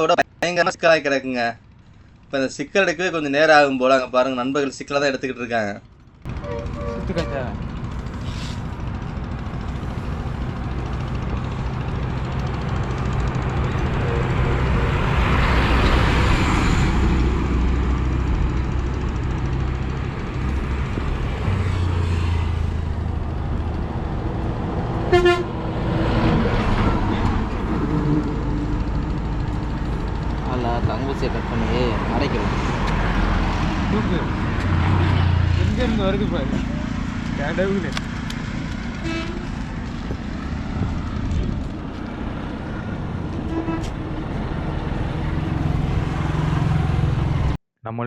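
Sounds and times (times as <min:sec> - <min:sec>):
traffic engine rumble: 0:00.0 - 0:47.6
car horn toot: 0:06.3 - 0:07.6, 0:25.1 - 0:25.6, 0:39.0 - 0:39.6, 0:43.4 - 0:43.9
vehicle passing: 0:06.3 - 0:47.6.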